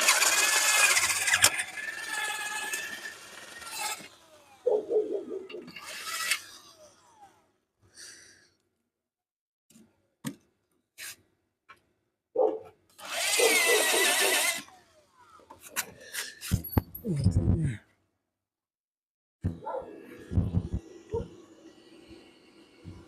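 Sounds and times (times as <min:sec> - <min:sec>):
power drill running: 0:00.0 - 0:04.7, 0:05.7 - 0:07.5, 0:13.0 - 0:15.6.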